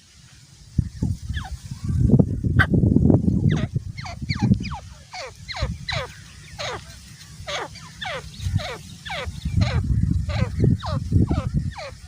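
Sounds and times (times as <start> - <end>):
francolin whistled calls: 3.4 - 12.0.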